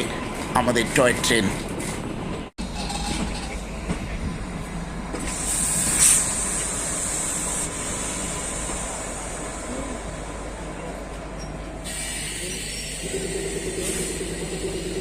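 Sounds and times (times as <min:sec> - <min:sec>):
train rumbling along track: 0:00.0 - 0:15.0.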